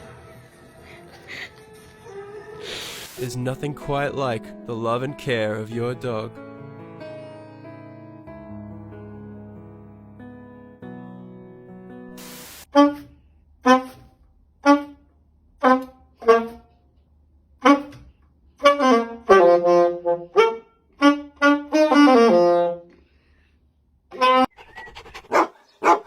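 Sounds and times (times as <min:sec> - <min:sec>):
saxophone playing notes: 0:12.2 - 0:16.6, 0:17.6 - 0:23.0, 0:24.1 - 0:24.5.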